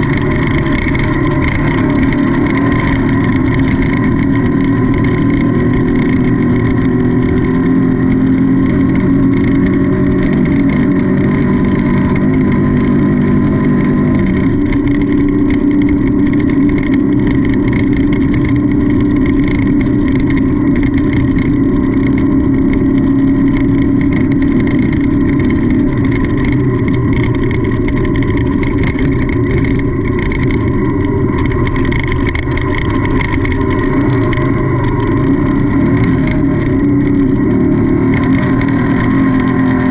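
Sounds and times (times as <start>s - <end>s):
race car engine running hard: 0.0s - 39.9s.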